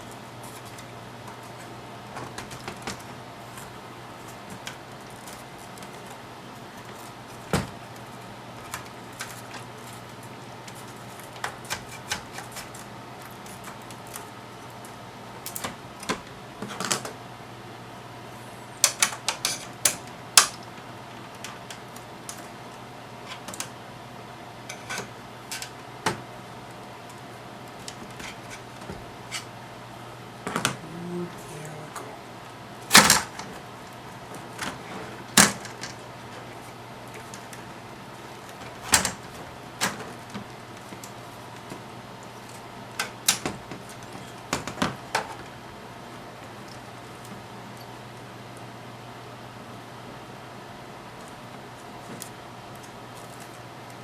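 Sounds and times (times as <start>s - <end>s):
steady low hum: 0.0s - 54.0s
sharp metal clatter: 15.5s - 15.7s
tools clicking on metal chassis: 15.5s - 15.8s.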